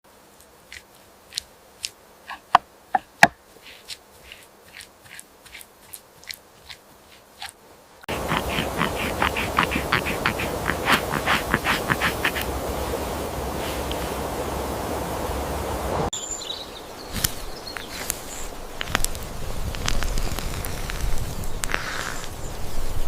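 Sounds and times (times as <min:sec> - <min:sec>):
steady outdoor noise: 0:00.0 - 0:23.0
rapid crackling clicks: 0:18.8 - 0:22.4.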